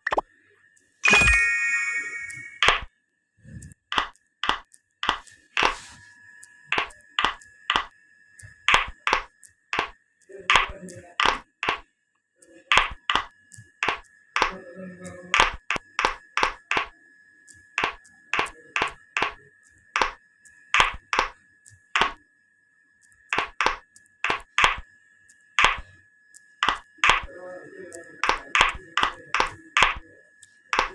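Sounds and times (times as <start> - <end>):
steady high-pitched tone: 1.0 - 2.9
sharp clicks: 12.7 - 14.6, 15.4 - 16.9, 20.0 - 20.2, 20.8 - 22.2, 23.0 - 24.9, 25.6 - 27.3, 27.9 - 30.9.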